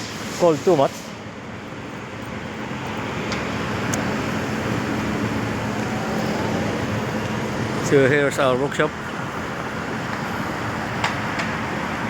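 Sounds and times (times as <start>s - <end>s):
passing road traffic rushing: 0.0s - 12.0s.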